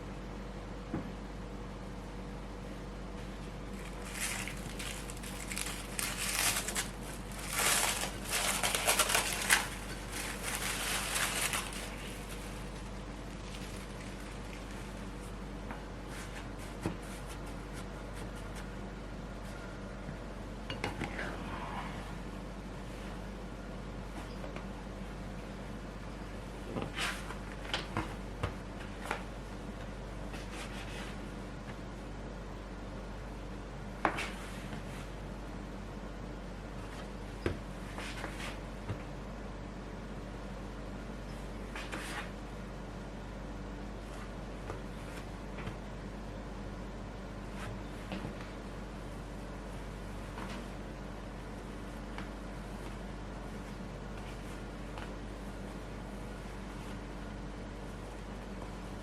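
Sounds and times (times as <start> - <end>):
steady low hum: 0.0 - 59.0
hands shaping bread dough: 26.6 - 31.8.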